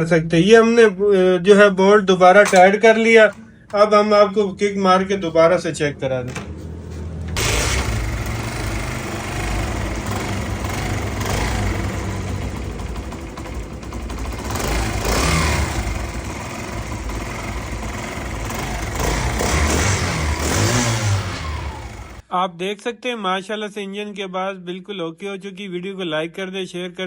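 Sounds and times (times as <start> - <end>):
motorcycle engine revving: 6.6 - 22.2.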